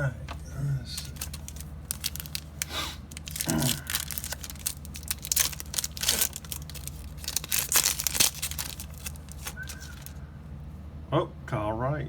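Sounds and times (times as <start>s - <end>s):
foil wrapper tearing and crinkling: 1.0s - 10.2s.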